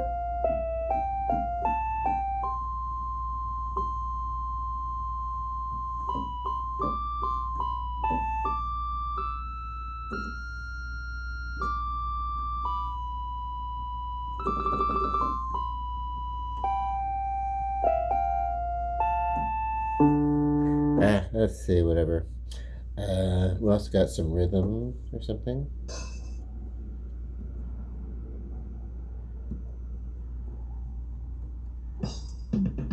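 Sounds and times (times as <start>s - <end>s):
electronic keyboard melody: 0.0s - 21.2s
steady low hum: 0.0s - 32.9s.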